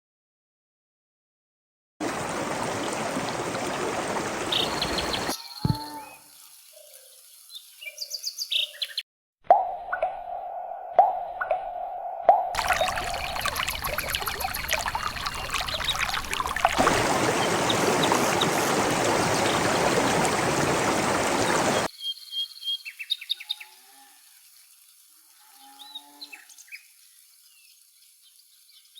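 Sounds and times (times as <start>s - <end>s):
running water splashing: 2.0s - 9.0s, 12.5s - 21.9s, 24.2s - 25.8s
birds chirping: 2.8s - 23.7s.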